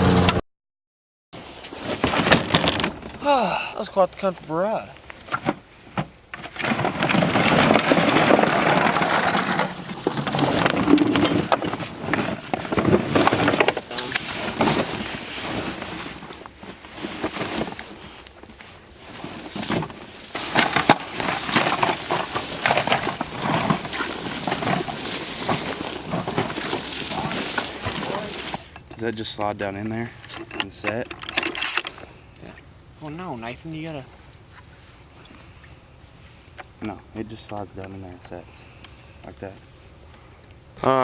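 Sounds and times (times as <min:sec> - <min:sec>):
crunching and rustling through timber: 0:01.4 - 0:29.3.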